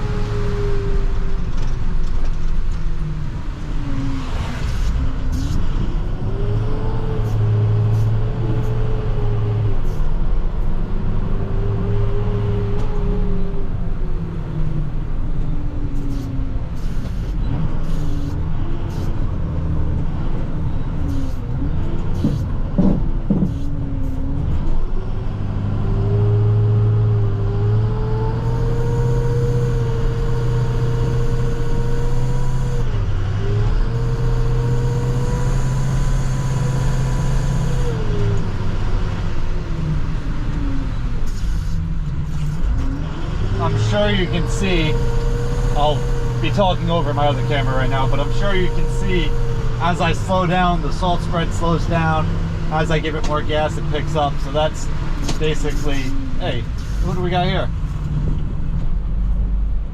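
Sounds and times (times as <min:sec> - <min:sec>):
truck diesel engine revving: 0:16.7 - 0:59.7.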